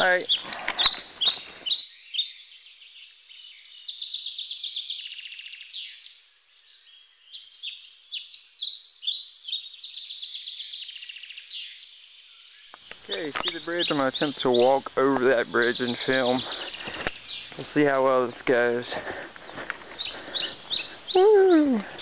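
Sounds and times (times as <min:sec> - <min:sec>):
songbirds singing: 0:00.0 - 0:22.0.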